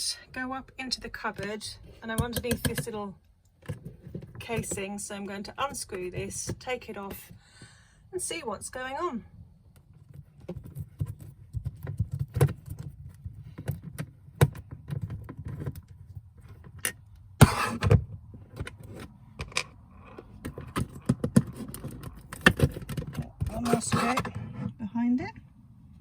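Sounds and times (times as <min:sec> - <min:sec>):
plastic casing scrape: 0:14.9 - 0:24.8.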